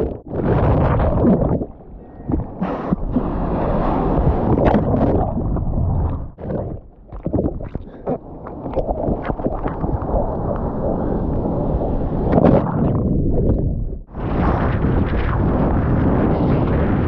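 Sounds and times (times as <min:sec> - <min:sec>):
surf water rushing and splashing: 0:00.0 - 0:13.4
wind buffeting microphone: 0:00.0 - 0:17.0.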